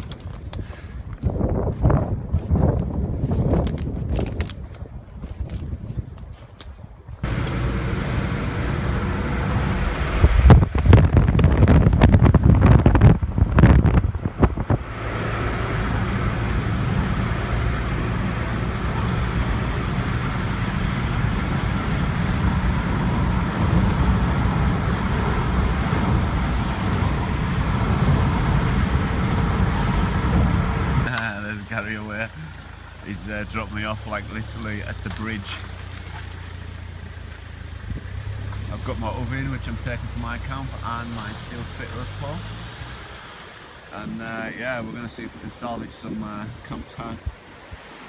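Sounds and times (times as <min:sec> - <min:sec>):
car engine and road noise: 0:00.0 - 0:48.0
low rumble: 0:07.2 - 0:41.4.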